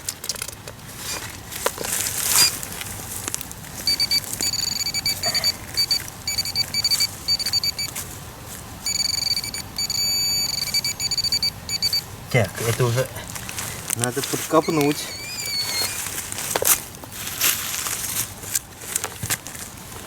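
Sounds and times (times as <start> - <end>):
metal detector beeping: 2.3 - 2.6, 3.8 - 8.1, 8.8 - 12.2, 14.5 - 16.1
rustling: 12.6 - 19.8.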